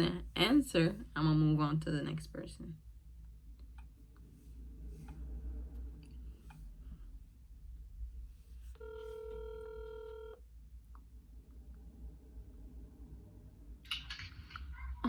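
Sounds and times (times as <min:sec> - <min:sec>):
low hum: 0:00.0 - 0:15.0
phone ringing tone: 0:08.8 - 0:10.4.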